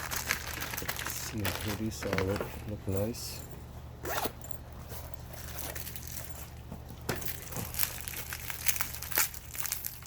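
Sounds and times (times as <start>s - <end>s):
packaging crinkling: 0.0s - 2.7s, 5.4s - 6.6s, 7.3s - 10.0s.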